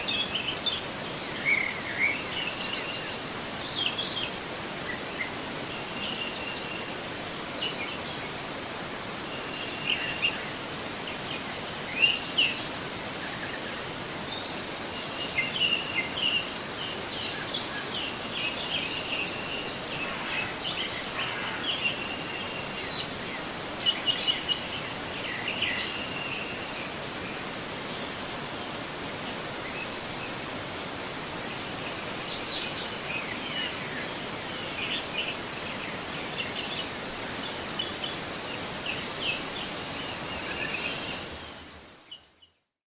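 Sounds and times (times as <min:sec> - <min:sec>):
river rushing: 0:00.0 - 0:41.9.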